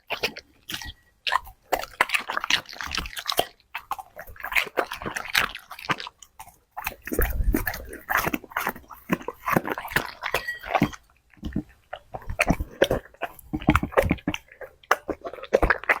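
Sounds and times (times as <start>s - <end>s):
dog chewing and crunching food: 0.0s - 16.0s.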